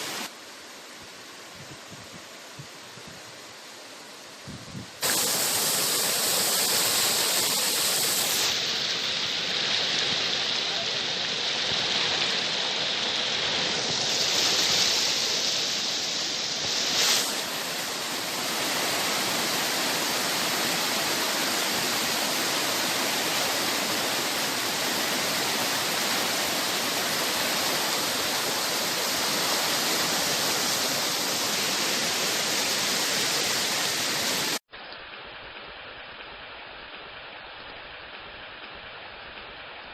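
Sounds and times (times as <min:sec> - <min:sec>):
waterfall rushing: 0:00.0 - 0:01.6, 0:02.3 - 0:34.6.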